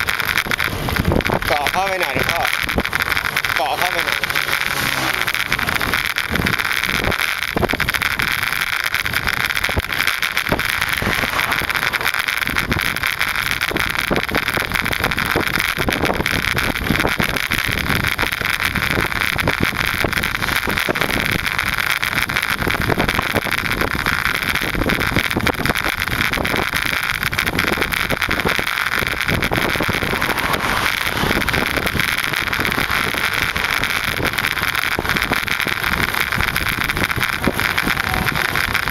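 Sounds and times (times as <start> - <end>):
road noise hiss: 0.0 - 38.9
wind buffeting microphone: 0.0 - 38.9.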